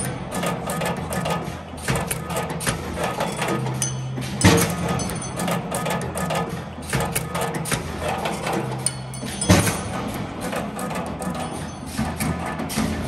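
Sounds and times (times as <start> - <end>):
machine clicks and knocks: 0.0 - 13.0
loud metal clank: 3.0 - 6.0, 8.1 - 12.3.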